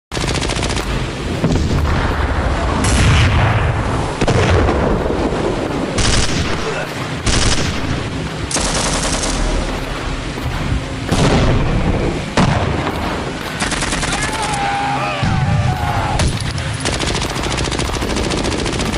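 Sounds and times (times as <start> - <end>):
automatic gunfire: 6.0 - 6.6, 7.3 - 7.9, 8.5 - 9.6, 16.2 - 18.9.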